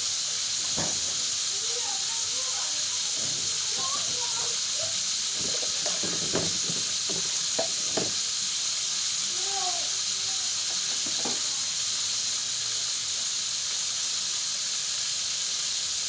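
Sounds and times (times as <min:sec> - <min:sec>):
hot oil sizzling in a frying pan: 0:00.0 - 0:16.0
utensils knocking: 0:05.4 - 0:08.2.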